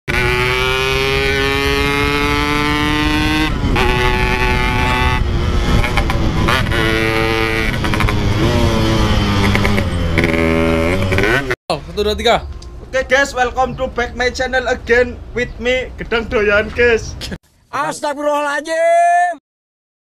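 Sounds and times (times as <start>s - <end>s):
motorcycle accelerating: 0.1s - 11.6s.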